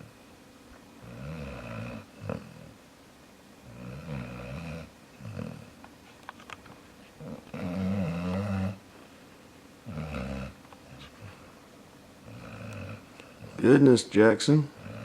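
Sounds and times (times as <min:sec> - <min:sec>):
puppy snoring: 0:01.0 - 0:02.8, 0:03.6 - 0:05.8, 0:07.2 - 0:08.8, 0:09.8 - 0:11.5, 0:12.2 - 0:13.8, 0:14.6 - 0:15.0.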